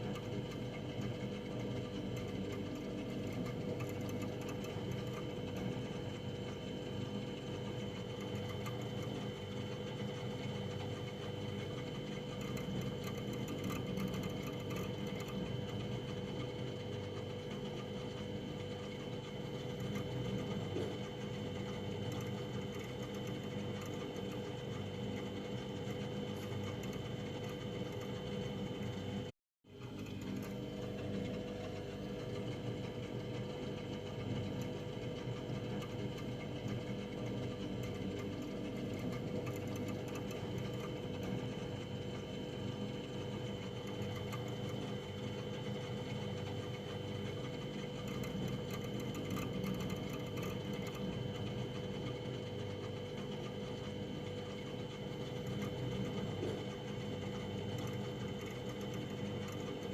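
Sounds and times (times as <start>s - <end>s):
freezer humming: 0.0s - 59.9s.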